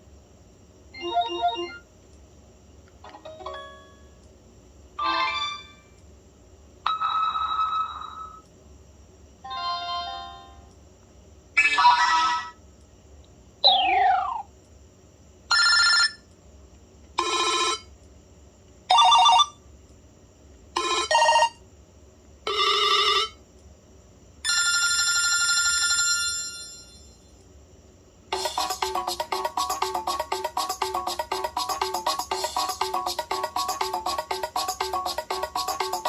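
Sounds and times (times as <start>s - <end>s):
ringtone melody: 28.3s - 36.0s.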